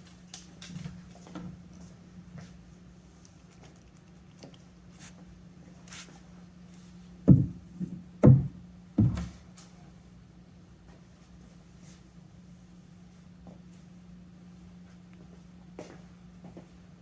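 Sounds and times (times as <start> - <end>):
steady low hum: 0.0 - 17.0
dull thumps of clay slabs: 7.3 - 9.4.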